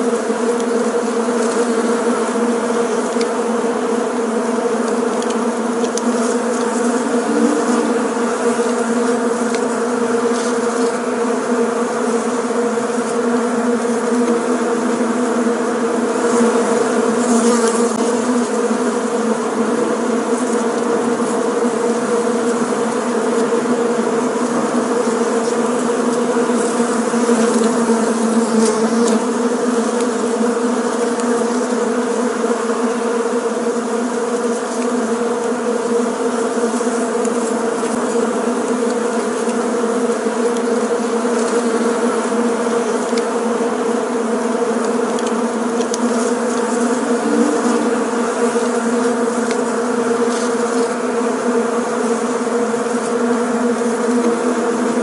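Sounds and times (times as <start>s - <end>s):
bees buzzing: 0.0s - 55.0s.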